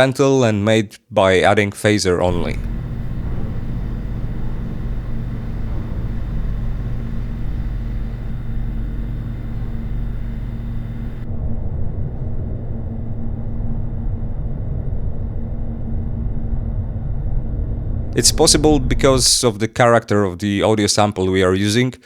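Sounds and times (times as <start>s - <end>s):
hiss: 2.3s - 11.2s
low sci-fi hum: 2.3s - 19.6s
rough low rumble: 2.3s - 19.6s.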